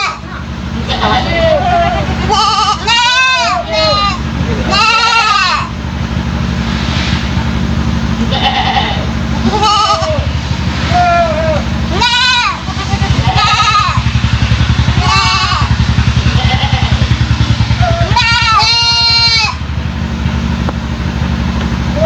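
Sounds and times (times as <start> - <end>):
young goat bleating: 0.0 - 5.7, 8.2 - 10.3, 10.9 - 14.0, 15.0 - 15.7, 16.4 - 17.1, 17.8 - 19.6
low hum: 0.0 - 22.0.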